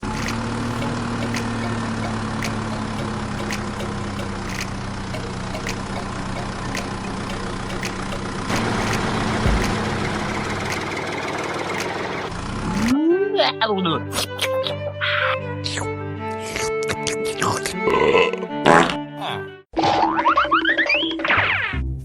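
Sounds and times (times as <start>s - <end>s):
motor humming: 0.0s - 13.0s
sharp clicks: 0.0s - 13.0s.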